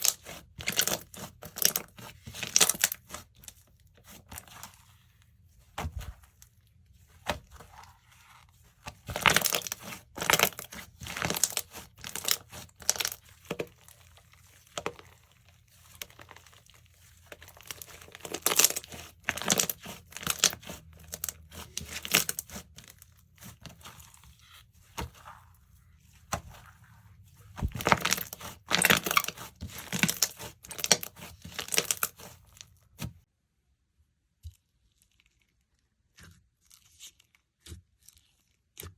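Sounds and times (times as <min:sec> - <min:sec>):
slime squishing and popping: 0:00.0 - 0:04.8, 0:08.8 - 0:15.2, 0:15.9 - 0:24.2, 0:27.6 - 0:33.1.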